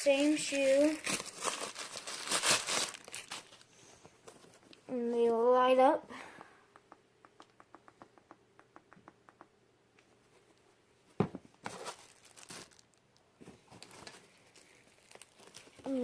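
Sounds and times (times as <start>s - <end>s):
plastic packaging crinkling: 0.0s - 3.7s, 11.6s - 13.0s, 13.6s - 16.0s.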